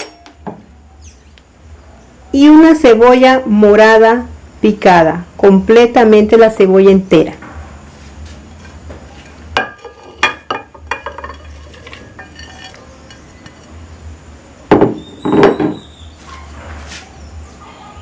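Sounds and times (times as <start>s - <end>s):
kitchenware clinking: 8.6s - 13.8s
knocks on blender jar: 14.7s - 15.8s.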